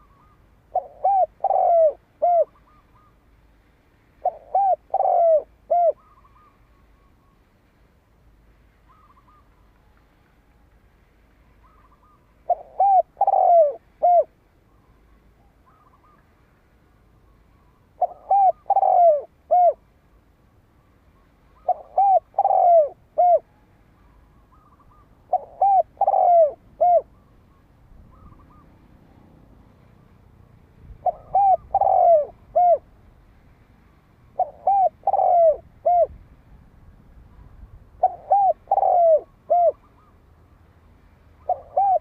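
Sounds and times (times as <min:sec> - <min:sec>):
dove cooing: 0:00.0 - 0:03.2, 0:04.2 - 0:07.4, 0:08.9 - 0:09.5, 0:11.6 - 0:14.4, 0:18.0 - 0:19.8, 0:21.6 - 0:27.3, 0:28.1 - 0:28.8, 0:31.0 - 0:32.9, 0:34.4 - 0:36.2, 0:38.0 - 0:40.2, 0:41.4 - 0:42.0
faint high bird calls: 0:00.0 - 0:03.3, 0:04.2 - 0:07.7, 0:08.8 - 0:16.4, 0:17.1 - 0:29.0, 0:37.3 - 0:40.4.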